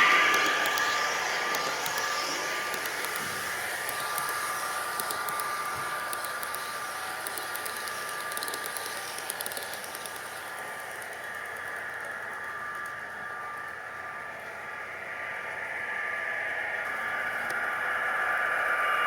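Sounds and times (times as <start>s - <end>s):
faint rapid clicking: 0.0s - 13.8s
model train motor hum: 0.0s - 19.0s.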